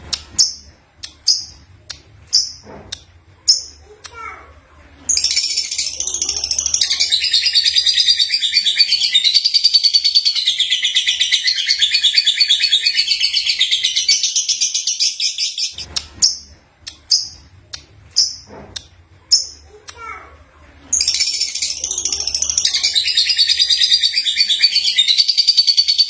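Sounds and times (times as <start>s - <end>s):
lovebird chattering song: 5.1s - 17.4s, 20.9s - 26.0s.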